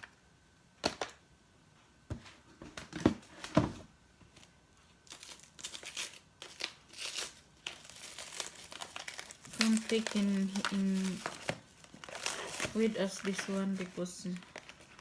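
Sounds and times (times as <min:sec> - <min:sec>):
plastic packaging crinkling: 0:04.4 - 0:15.0.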